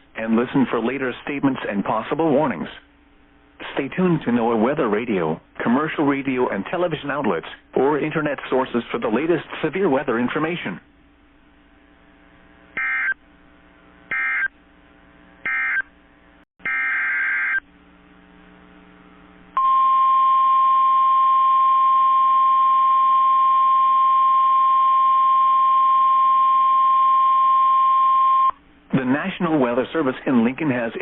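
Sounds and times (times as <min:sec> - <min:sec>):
steady alarm tone: 0:12.8 - 0:13.2, 0:14.1 - 0:14.5, 0:15.4 - 0:15.9, 0:16.6 - 0:17.7.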